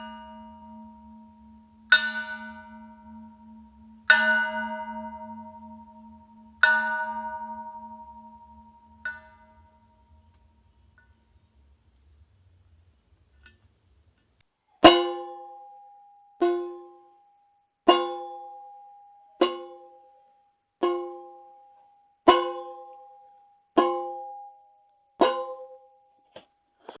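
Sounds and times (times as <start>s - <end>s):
bell-like tone ringing: 0.0s - 11.9s.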